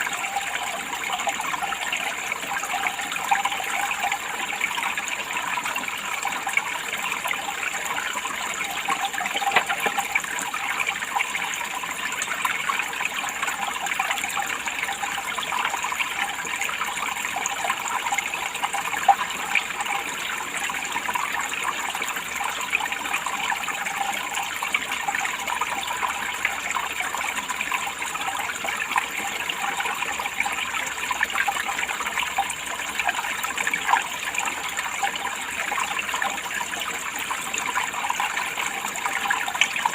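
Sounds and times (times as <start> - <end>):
running water splashing: 0.0 - 12.8.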